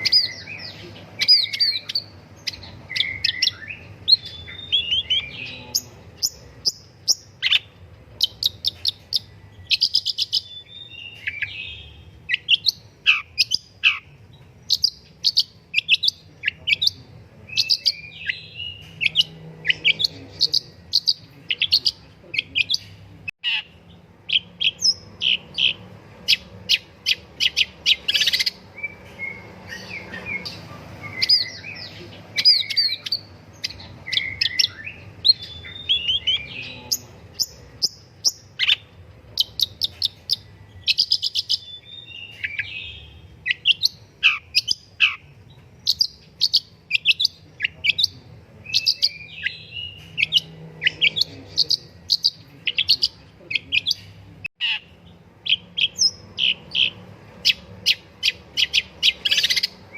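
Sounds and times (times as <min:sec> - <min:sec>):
bird singing sharp chirps: 0:23.5 - 0:59.9.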